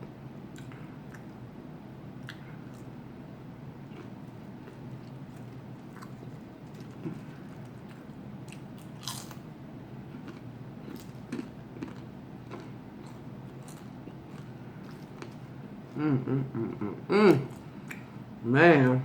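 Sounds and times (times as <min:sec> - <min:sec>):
person chewing crunchy food: 0:03.8 - 0:16.1.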